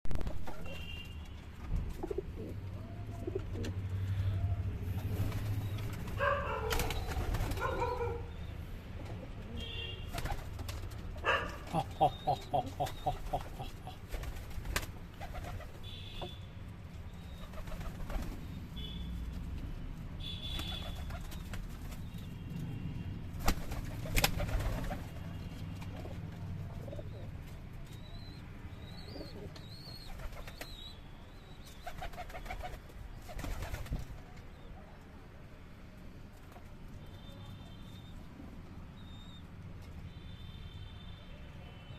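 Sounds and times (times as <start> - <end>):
pigeons cooing: 11.2 - 14.4.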